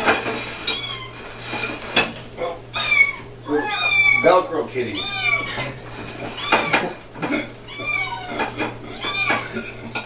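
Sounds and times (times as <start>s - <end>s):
dishes clinking: 0.0s - 2.3s, 5.1s - 10.0s
kittens meowing: 0.7s - 1.2s, 2.4s - 9.9s.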